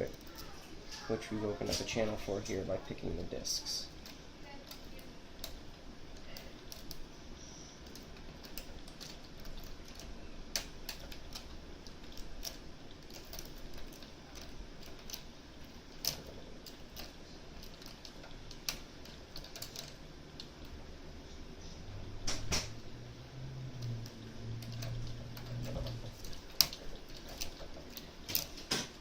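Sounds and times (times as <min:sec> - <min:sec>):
lock pick clicking and scraping: 0:07.8 - 0:20.5, 0:23.8 - 0:28.8.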